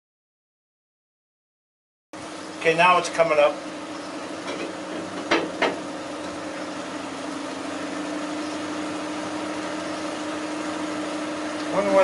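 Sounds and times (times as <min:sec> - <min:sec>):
steady machine hum: 0:02.2 - 0:12.0
sharp knocks: 0:04.4 - 0:05.8.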